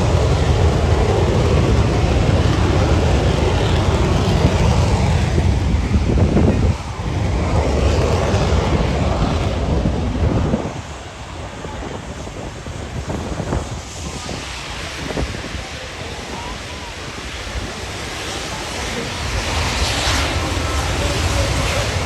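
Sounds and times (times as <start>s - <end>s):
jet engine rumble: 0.0s - 22.0s
wind buffeting microphone: 0.0s - 22.0s.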